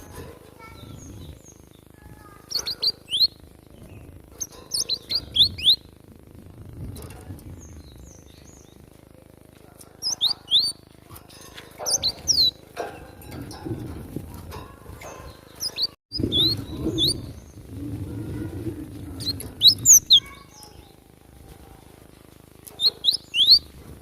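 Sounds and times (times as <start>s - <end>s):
bird calling sharp rising notes: 19.0s - 20.4s, 22.8s - 23.7s.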